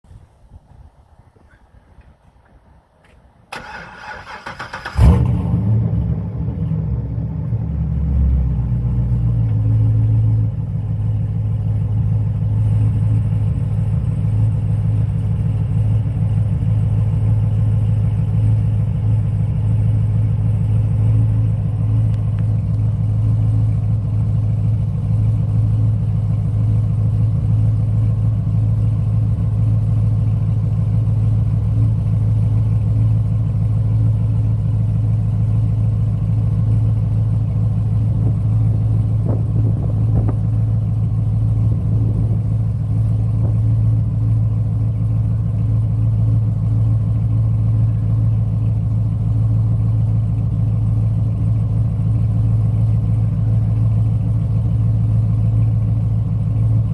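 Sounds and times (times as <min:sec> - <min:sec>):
engine catching with loud burst: 0:03.5 - 0:06.3
engine idling loudly: 0:10.5 - 0:56.9.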